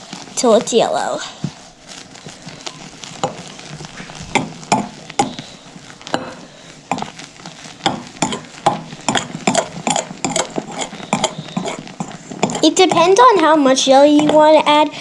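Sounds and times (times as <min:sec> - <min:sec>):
spoon scraping a bowl: 0:04.3 - 0:13.5, 0:14.2 - 0:14.5.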